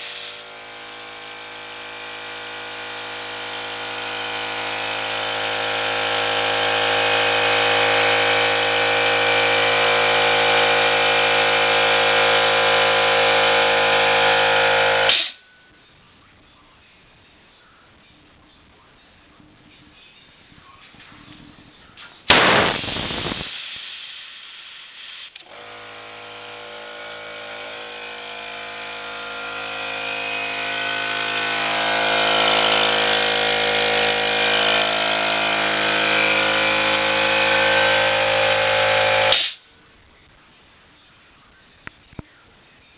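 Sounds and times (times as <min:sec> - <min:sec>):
loud air burst: 0:00.0 - 0:00.6, 0:22.3 - 0:25.5, 0:30.6 - 0:39.6
air compressor humming: 0:00.0 - 0:15.5, 0:22.2 - 0:39.6.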